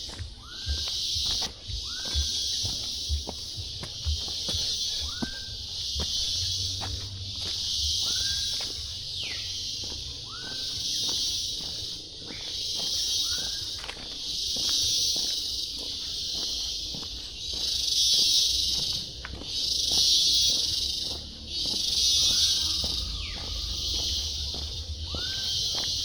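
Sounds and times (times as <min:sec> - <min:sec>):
insects buzzing: 0:00.0 - 0:26.0
short bird calls: 0:04.4 - 0:15.5, 0:17.4 - 0:26.0.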